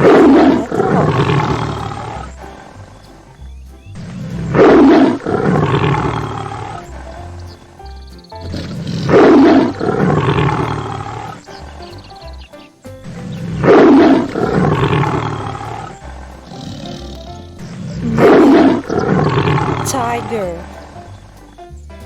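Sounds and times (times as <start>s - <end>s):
tiger roaring: 0.0s - 2.8s
background music: 0.0s - 22.0s.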